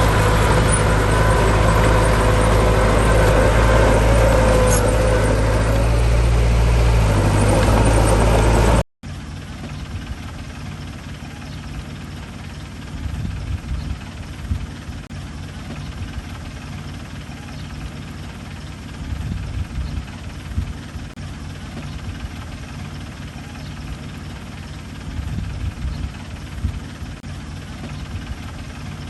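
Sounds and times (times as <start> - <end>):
heavy diesel engine running: 0.0 - 29.0
quieter uneven engine: 0.0 - 29.0.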